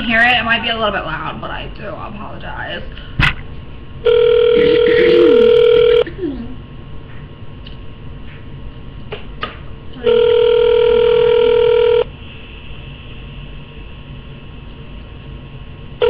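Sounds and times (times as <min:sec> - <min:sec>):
telephone ringback tone: 0:04.0 - 0:06.0, 0:10.0 - 0:12.1.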